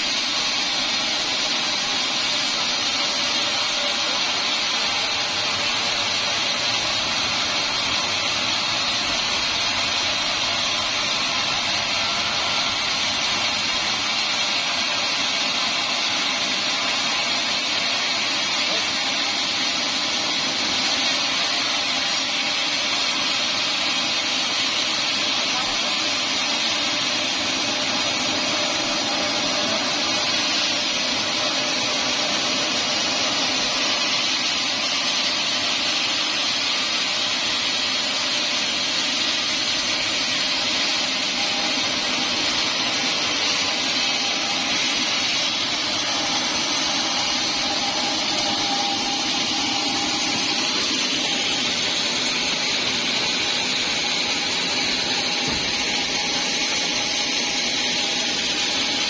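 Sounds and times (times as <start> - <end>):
band sawmill whining: 0.0 - 59.0.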